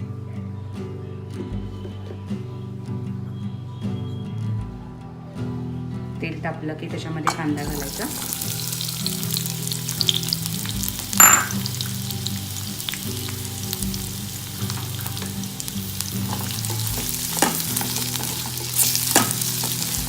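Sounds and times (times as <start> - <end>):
onions sizzling in hot oil: 7.6 - 20.0
stirring in a pan: 7.6 - 20.0.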